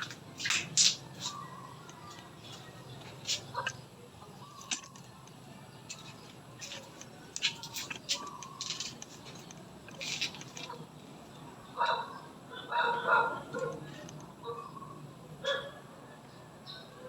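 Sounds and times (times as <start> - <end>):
small birds chirping: 0.0 - 12.7
faint steady background noise: 0.0 - 17.0.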